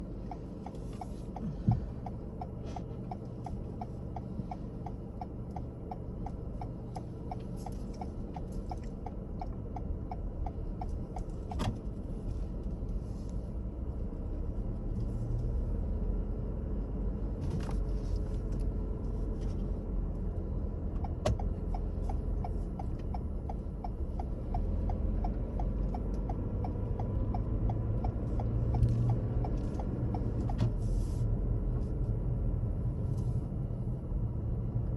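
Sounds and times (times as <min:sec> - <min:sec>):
light regular ticking: 0:00.0 - 0:12.9, 0:20.1 - 0:30.6
car engine and tyres rumbling: 0:00.0 - 0:34.9.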